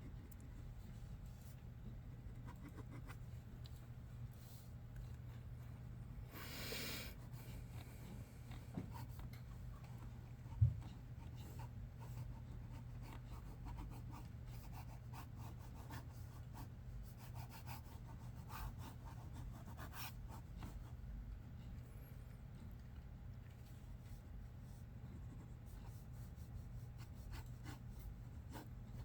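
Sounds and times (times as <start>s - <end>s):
steady low hum: 0.0s - 29.0s
pencil scratching on paper: 11.2s - 21.0s, 25.1s - 29.0s.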